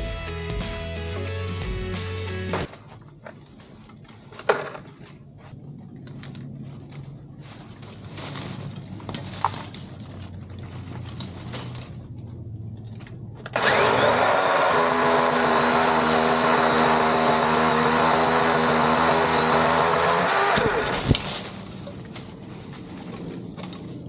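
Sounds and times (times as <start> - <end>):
electric chainsaw whine: 13.5 - 21.3.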